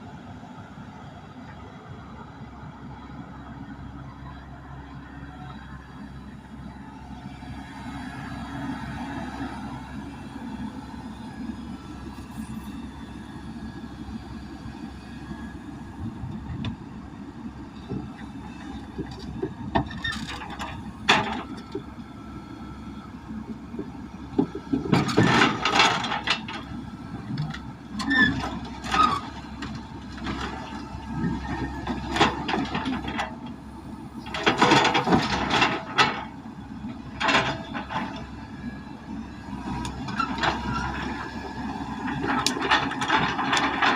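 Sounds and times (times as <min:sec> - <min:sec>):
heavy machinery engine running: 0:00.1 - 0:43.9
loud clanking and scraping: 0:19.0 - 0:21.8, 0:24.4 - 0:26.7, 0:27.4 - 0:33.4, 0:34.2 - 0:36.4, 0:37.1 - 0:38.3, 0:42.1 - 0:43.9.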